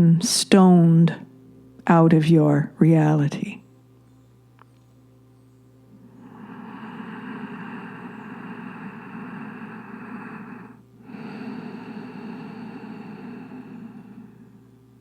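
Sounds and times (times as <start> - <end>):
heavy breathing: 6.0 - 15.0.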